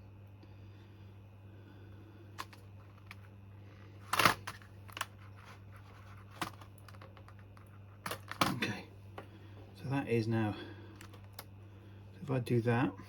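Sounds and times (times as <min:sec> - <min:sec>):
steady low hum: 0:00.0 - 0:13.0
plastic keyboard clatter: 0:04.0 - 0:08.7.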